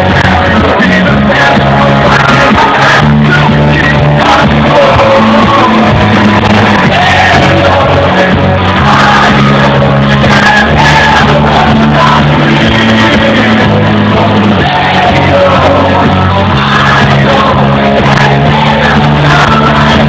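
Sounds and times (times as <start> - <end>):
live rock band playing: 0.0 - 20.0
person singing: 0.0 - 20.0.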